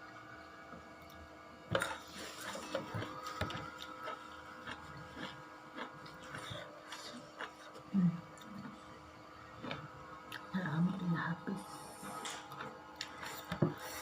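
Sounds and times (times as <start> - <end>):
crunching raw vegetables: 1.7 - 8.9, 9.5 - 10.5.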